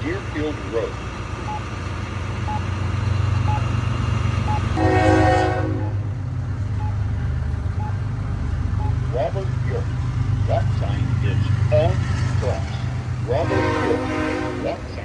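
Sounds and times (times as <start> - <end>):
low traffic hum: 0.0 - 15.0
vehicle horn: 4.8 - 6.0, 11.7 - 15.0.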